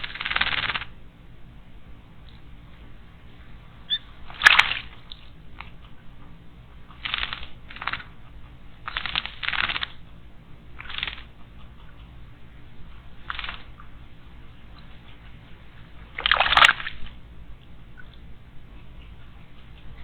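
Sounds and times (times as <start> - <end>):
bird splashing in water: 0.0 - 1.0, 3.2 - 20.0
bird wing flutters: 0.0 - 1.0, 3.9 - 5.7, 7.0 - 8.2, 8.8 - 10.0, 10.8 - 11.3, 13.2 - 13.9.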